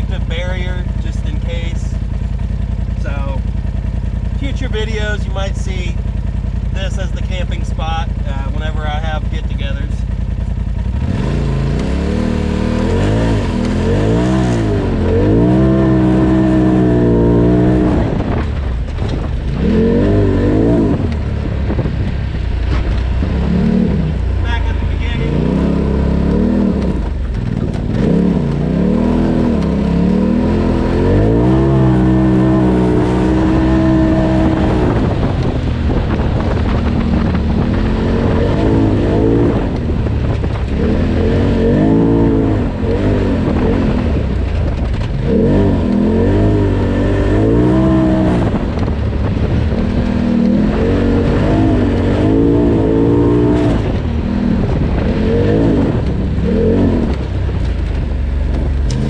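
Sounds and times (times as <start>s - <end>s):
turbocharged engine revving: 0.0s - 59.0s.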